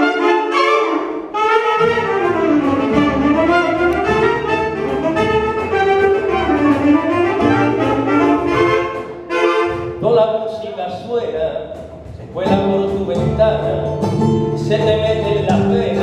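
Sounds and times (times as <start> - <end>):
brass and saxophone: 0.0 - 10.0
bass line: 1.8 - 16.0.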